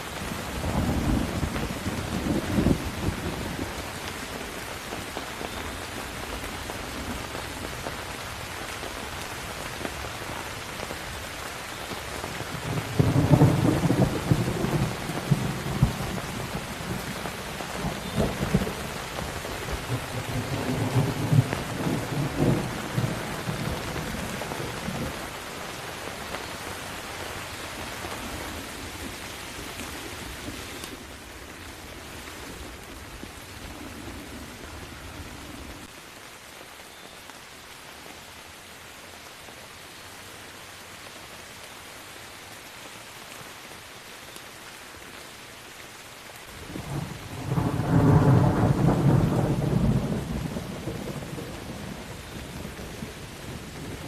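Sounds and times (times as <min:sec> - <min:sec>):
steady rain: 0:00.0 - 0:54.0
thunder rumbling: 0:00.2 - 0:03.9, 0:12.5 - 0:25.4, 0:46.6 - 0:54.0.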